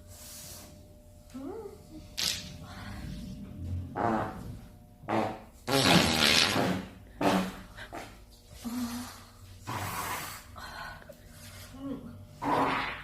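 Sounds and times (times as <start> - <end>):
farts: 2.2 - 2.5, 3.9 - 8.2, 9.6 - 10.5, 12.4 - 13.0.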